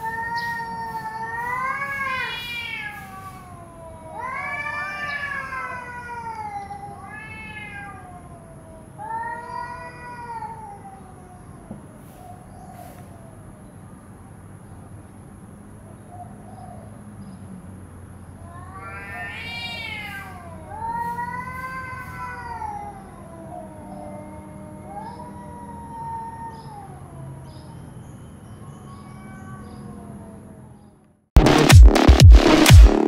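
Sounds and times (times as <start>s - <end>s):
cat meowing: 0.0s - 11.8s, 18.4s - 27.8s, 28.5s - 30.8s.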